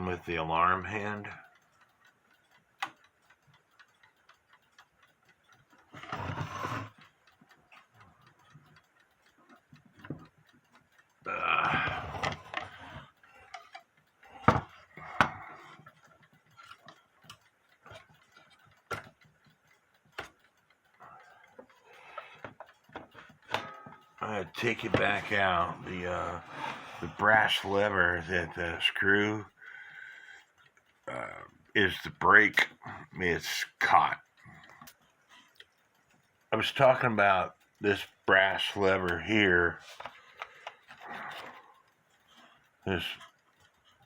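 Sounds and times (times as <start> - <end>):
mechanical alarm clock ticking: 0.0 - 44.0
rustling and scraping: 6.0 - 6.9.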